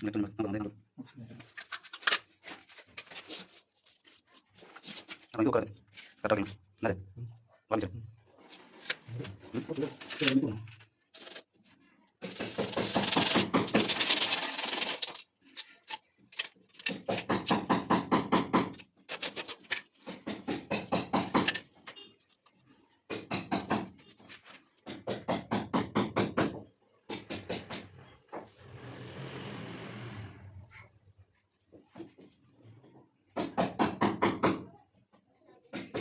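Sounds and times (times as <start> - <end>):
rushing or scraping noise: 28.5 - 30.7.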